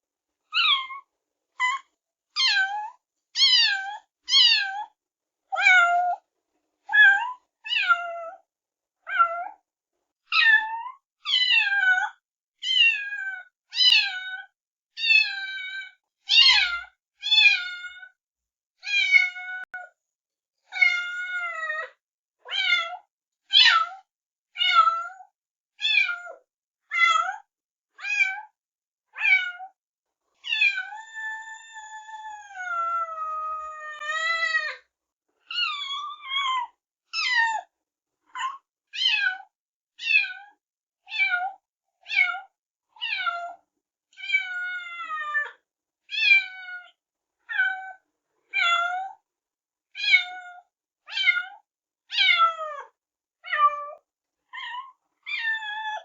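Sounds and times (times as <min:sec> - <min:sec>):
kittens meowing: 0:30.4 - 0:34.6.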